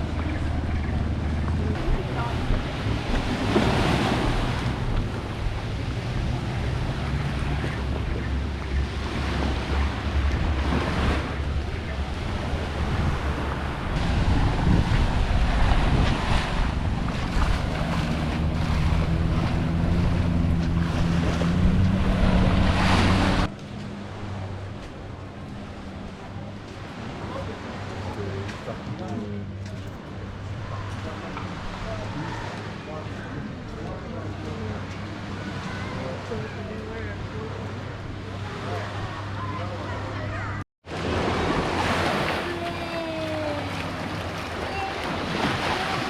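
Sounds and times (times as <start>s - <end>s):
wind buffeting microphone: 0.0s - 23.5s
boat engine running: 0.0s - 46.0s.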